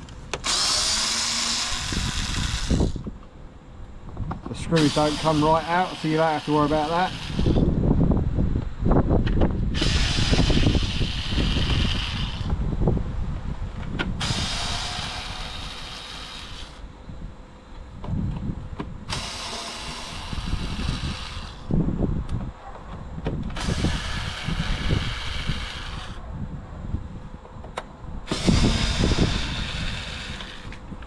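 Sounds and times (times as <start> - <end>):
wind rumbling on microphone: 0.0 - 31.0
cordless screwdriver running: 0.3 - 3.1, 4.5 - 7.7, 9.7 - 12.6, 14.2 - 16.8, 19.1 - 21.7, 23.6 - 26.2, 28.3 - 30.8.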